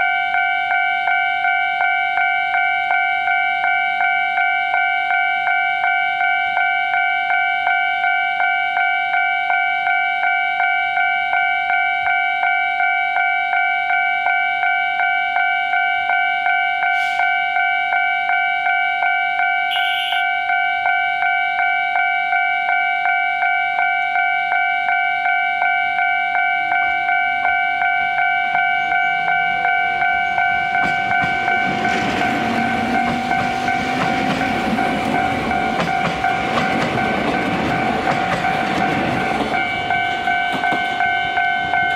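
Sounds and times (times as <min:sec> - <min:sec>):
level-crossing alarm ringing: 0:00.0 - 0:41.9
train rumble approaching: 0:28.6 - 0:41.9.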